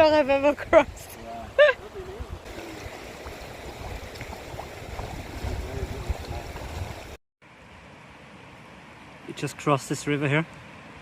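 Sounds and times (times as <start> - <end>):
river water rushing over stones: 2.4 - 11.0.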